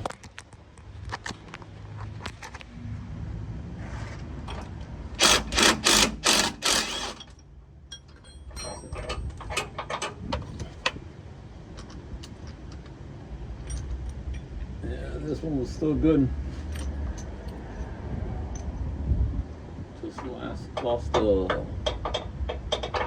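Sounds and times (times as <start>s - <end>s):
power drill bursts: 5.2s - 7.3s
light metallic clicks and clinks: 7.2s - 10.2s, 13.6s - 14.7s, 16.7s - 17.9s.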